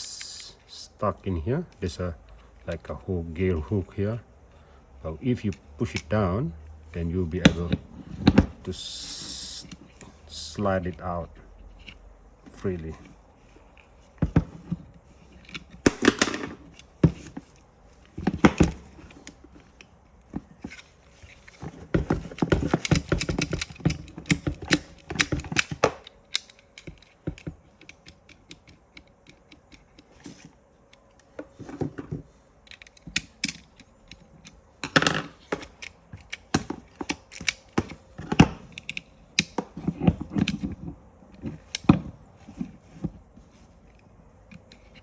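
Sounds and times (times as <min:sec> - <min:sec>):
plastic and metal parts clicking: 0:12.6 - 0:43.2, 0:43.8 - 0:45.0.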